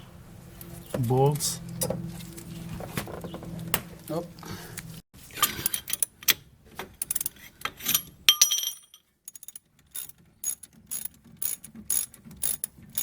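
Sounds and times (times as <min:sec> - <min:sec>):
ratchet wrench clicking: 0:09.3 - 0:13.0.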